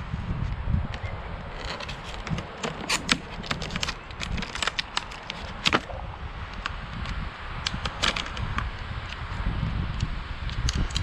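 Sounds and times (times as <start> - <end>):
plastic and cardboard crackling: 1.4 - 6.0, 7.7 - 8.8.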